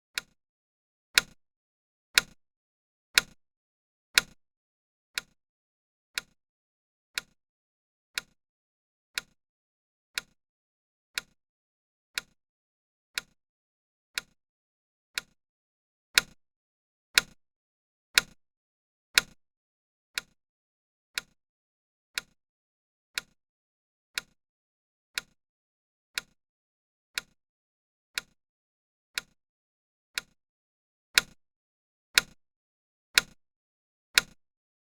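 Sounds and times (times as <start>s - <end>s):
clock ticks: 16.2s - 16.4s, 19.2s - 19.4s, 21.2s - 21.4s, 26.2s - 26.4s, 28.2s - 28.4s, 29.2s - 29.4s, 30.2s - 30.4s, 31.2s - 31.4s, 32.2s - 32.4s, 33.2s - 33.4s, 34.2s - 34.4s.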